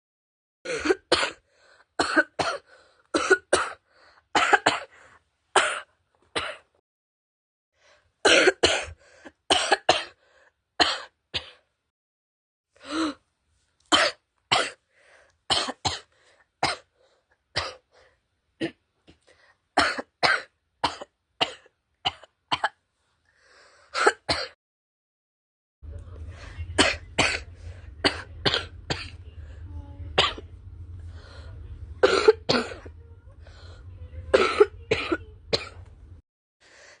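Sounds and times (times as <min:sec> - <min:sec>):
girl coughing: 0:00.7 - 0:01.4, 0:02.0 - 0:03.8, 0:04.4 - 0:04.9, 0:08.3 - 0:10.2, 0:24.0 - 0:24.6, 0:26.8 - 0:29.2, 0:30.2 - 0:30.4, 0:32.0 - 0:32.9, 0:34.3 - 0:35.8.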